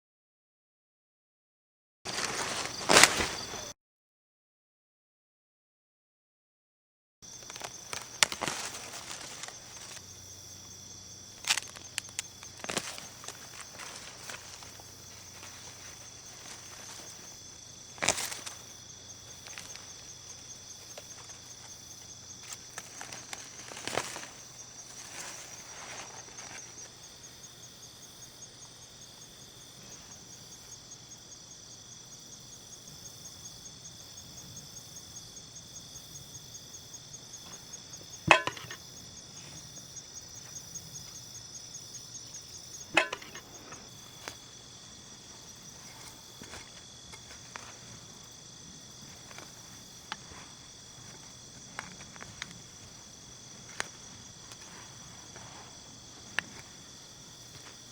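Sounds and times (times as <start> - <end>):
corn stalks cracking: 2.1 - 3.7, 7.3 - 10.1, 11.2 - 27.1, 38.3 - 38.8, 42.9 - 44.5
insects trilling: 2.1 - 3.7, 7.2 - 57.9.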